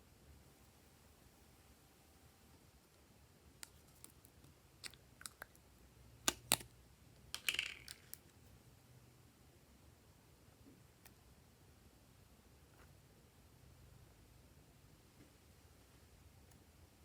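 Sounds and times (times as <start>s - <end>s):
slime clicking and popping: 6.3s - 6.7s.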